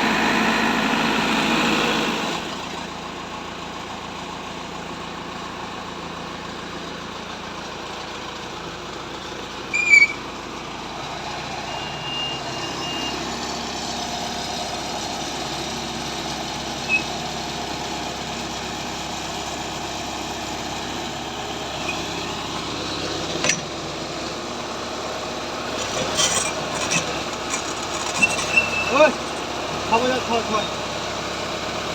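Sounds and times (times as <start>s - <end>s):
drilling rig engine running: 0.0s - 4.5s, 5.1s - 31.9s
loud high chirp: 9.8s - 10.2s.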